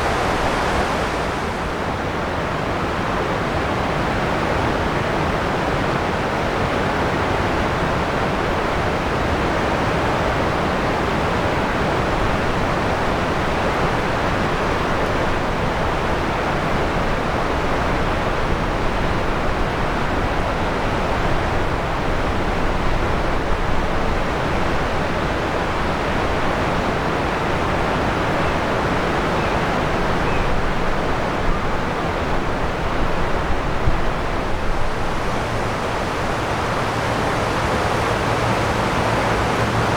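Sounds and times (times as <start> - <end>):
river water rushing: 0.0 - 5.6, 31.3 - 39.9.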